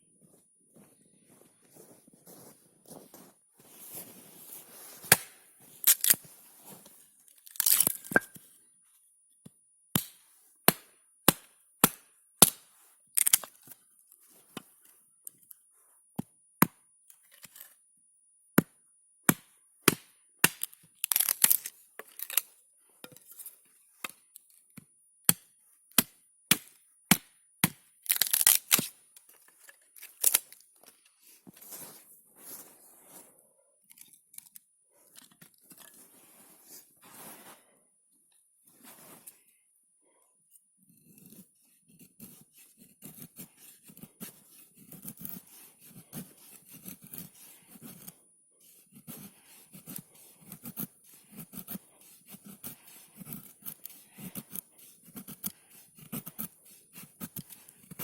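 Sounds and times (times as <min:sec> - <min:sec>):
dry wood cracking and snapping: 0:13.2 - 0:13.4, 0:20.5 - 0:22.4, 0:28.1 - 0:28.9.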